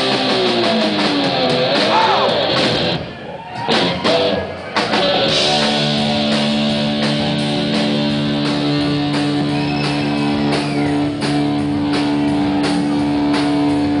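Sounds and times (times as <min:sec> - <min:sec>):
bass guitar: 0:00.0 - 0:14.0
electric guitar: 0:00.0 - 0:14.0
drum and cymbal hits: 0:03.6 - 0:14.0.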